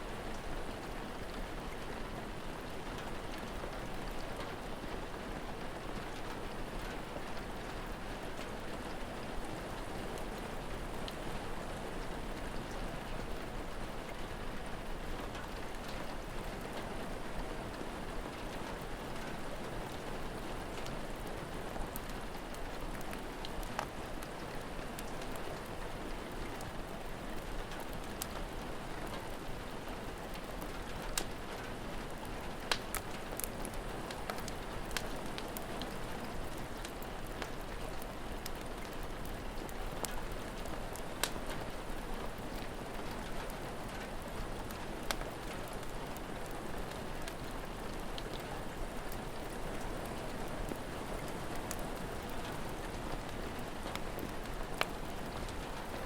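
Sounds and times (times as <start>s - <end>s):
rain pattering: 0.0s - 56.0s
fire crackling pops: 30.4s - 31.4s, 32.1s - 41.7s, 44.6s - 48.6s, 51.6s - 51.8s.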